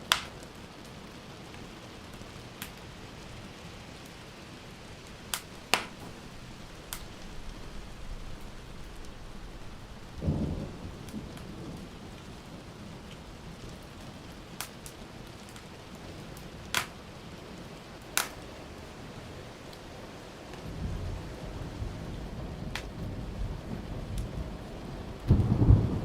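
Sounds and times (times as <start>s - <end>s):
wood fire crackling and popping: 0.0s - 19.0s, 22.6s - 26.0s
steady rain hiss: 0.0s - 26.0s
thunder rumbling: 5.0s - 13.8s, 20.7s - 26.0s.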